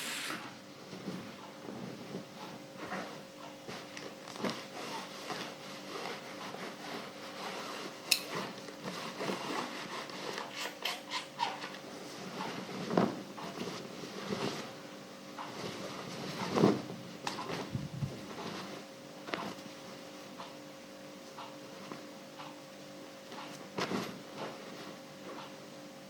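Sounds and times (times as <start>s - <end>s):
iron sliding over fabric: 0.0s - 0.6s, 5.6s - 8.0s.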